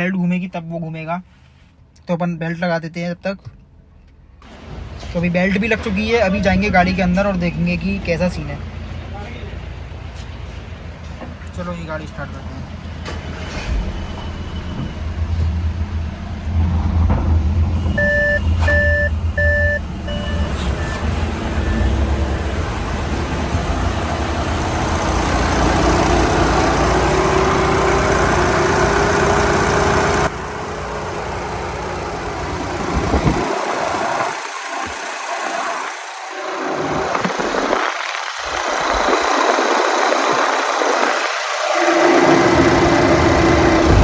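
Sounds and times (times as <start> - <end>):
diesel engine starting and running: 3.6 - 44.0
electronic warning beeps: 17.8 - 22.8.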